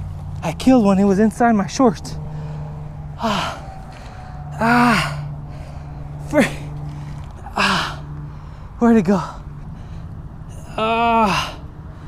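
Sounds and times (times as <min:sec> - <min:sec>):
man gasping and groaning: 0:02.2 - 0:12.0.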